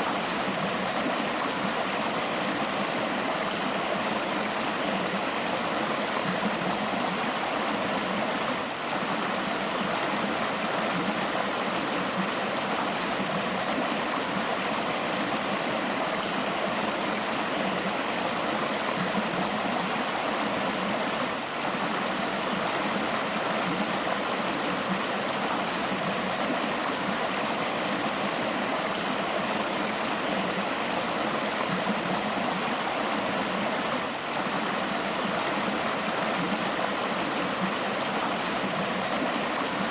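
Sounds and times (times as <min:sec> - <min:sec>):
river water rushing: 0:00.0 - 0:39.9.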